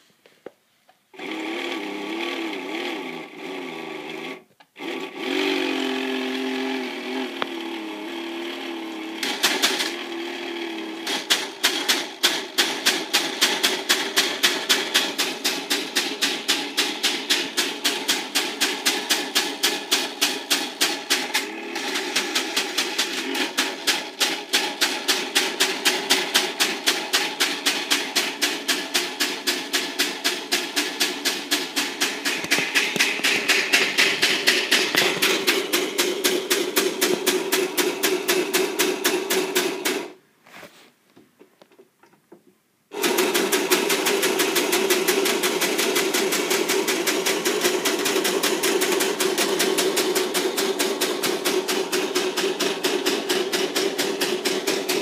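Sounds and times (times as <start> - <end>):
toy motor hum: 1.2 - 40.2, 42.9 - 55.0
rapid mechanical clicking: 8.9 - 40.2, 42.9 - 55.0.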